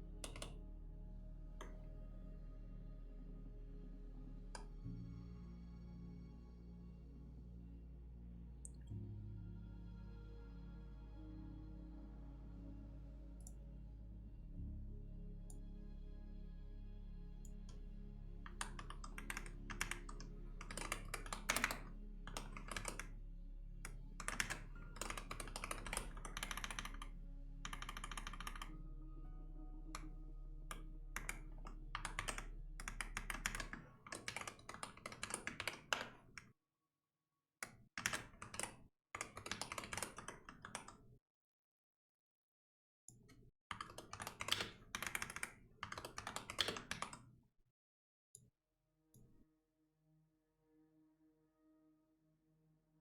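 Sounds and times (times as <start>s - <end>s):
low steady hum: 0.0s - 33.8s
typing on keyboard: 0.2s - 0.6s, 18.5s - 23.1s, 23.9s - 28.8s, 30.7s - 36.3s, 38.0s - 41.0s, 43.7s - 47.2s.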